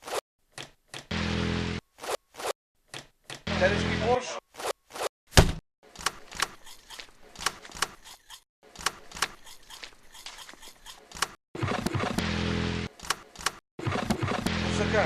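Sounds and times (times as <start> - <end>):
heavy thump: 5.4 - 5.6.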